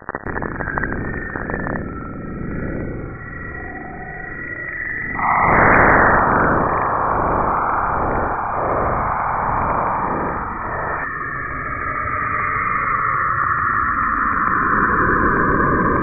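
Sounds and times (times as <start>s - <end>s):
eerie hiss with sweeping whooshes: 5.0s - 11.8s.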